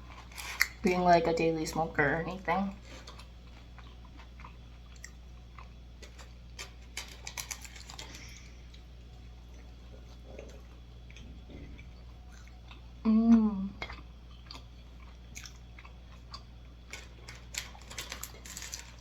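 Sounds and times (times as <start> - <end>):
low electrical hum: 0.0 - 19.0
person chewing: 2.9 - 6.3, 7.2 - 18.8.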